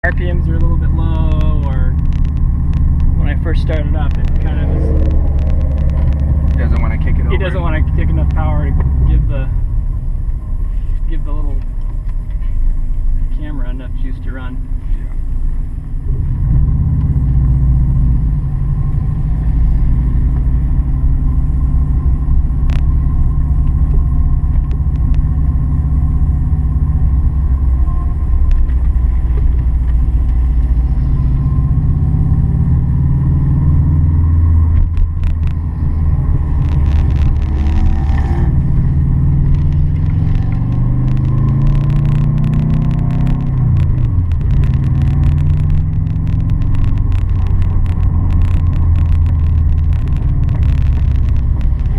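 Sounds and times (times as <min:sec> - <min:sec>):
car engine rumbling: 0:00.0 - 0:51.9
clicks and rattles: 0:39.4 - 0:51.9.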